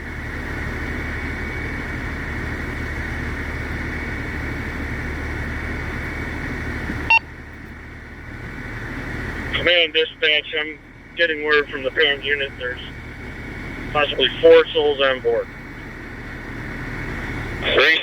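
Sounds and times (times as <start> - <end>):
radio static rush: 9.6 - 13.0, 13.8 - 15.7, 17.0 - 18.0
radio short beep: 17.6 - 18.0.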